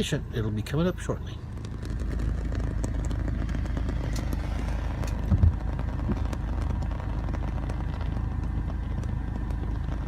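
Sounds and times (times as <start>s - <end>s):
car cabin road and engine noise: 0.0s - 10.0s.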